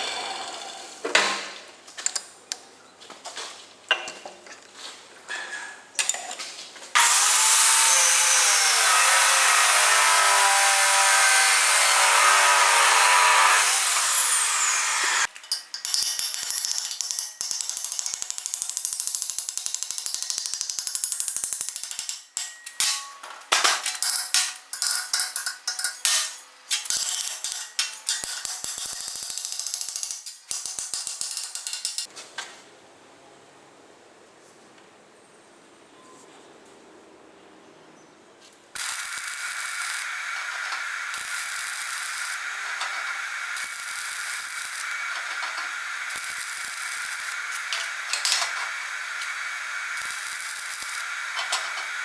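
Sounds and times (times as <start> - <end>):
power tool whining: 7.0 - 15.4, 38.8 - 52.0.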